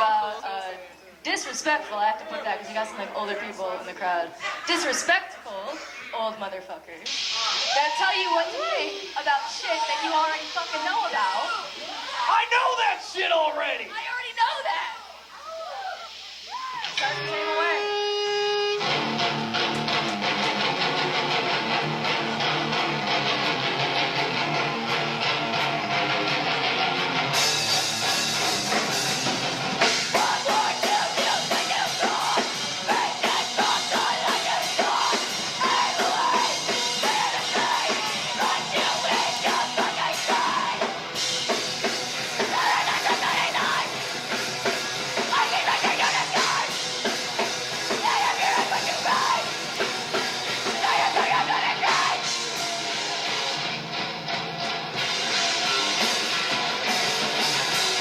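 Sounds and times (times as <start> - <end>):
heavy rock band playing: 16.9 - 58.0
person yelling vocals: 30.2 - 40.8, 42.5 - 43.9, 48.0 - 49.5.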